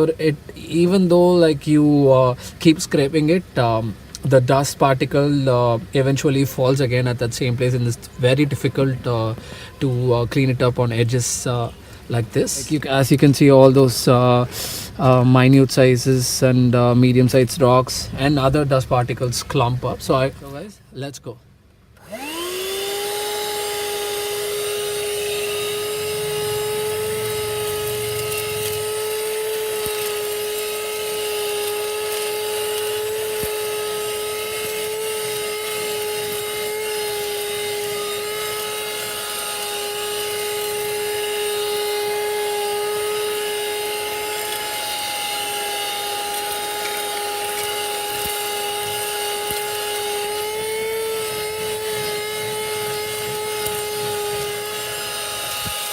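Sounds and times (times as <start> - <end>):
handheld vacuum motor whine: 21.9 - 55.9.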